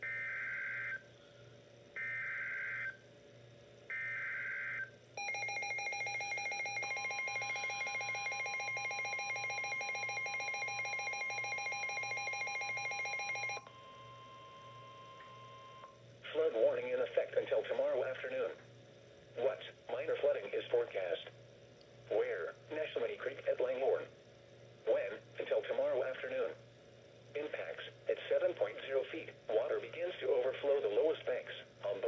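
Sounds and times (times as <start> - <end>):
steady warning tone: 3.9 - 17.1
fast-pulsing electronic beep: 5.2 - 14.4.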